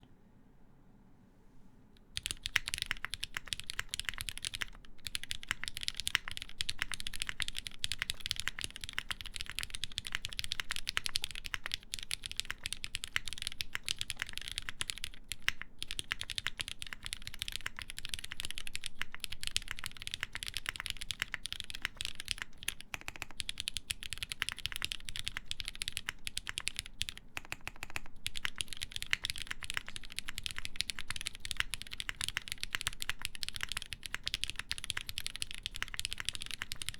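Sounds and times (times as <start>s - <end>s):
mechanical keyboard typing: 2.1s - 36.9s.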